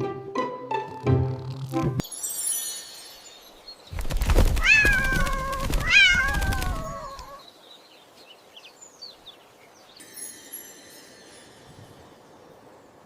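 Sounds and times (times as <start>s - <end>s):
crackly clicking noise: 4.0s - 7.3s
cat meowing: 4.6s - 7.4s.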